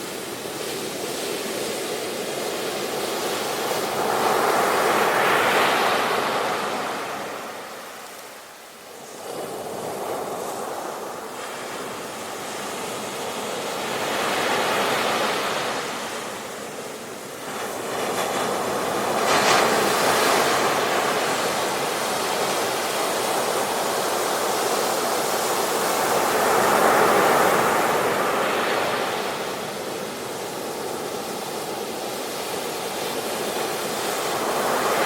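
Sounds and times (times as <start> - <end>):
ocean waves breaking: 9.2 - 35.0.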